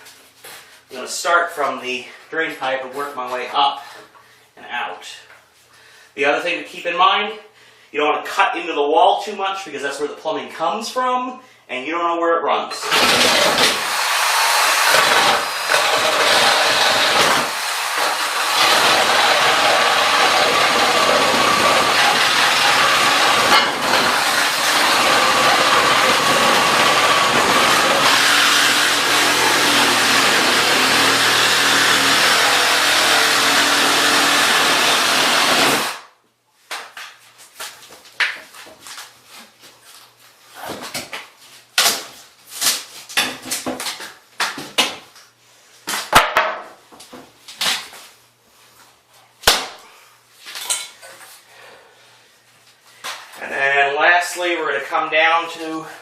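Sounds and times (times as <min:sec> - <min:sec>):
reciprocating saw cutting board: 0:12.9 - 0:36.0.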